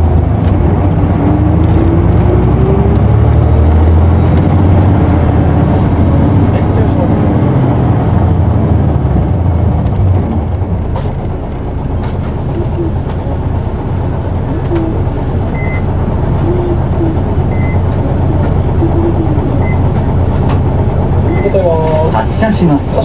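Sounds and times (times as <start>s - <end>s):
bus diesel engine running: 0.0s - 23.0s
short electronic beeps: 15.6s - 15.9s, 17.5s - 17.8s, 19.6s - 19.9s, 21.3s - 21.6s.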